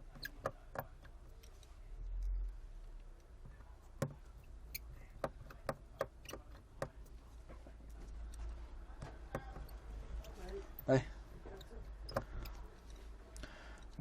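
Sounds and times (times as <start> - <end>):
repair tools clicking on phone: 3.9 - 7.2, 8.3 - 13.1.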